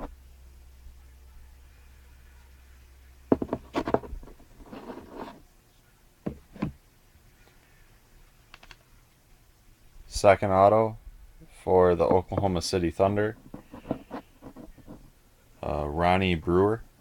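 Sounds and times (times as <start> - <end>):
knocks: 3.3 - 4.4, 6.2 - 6.8.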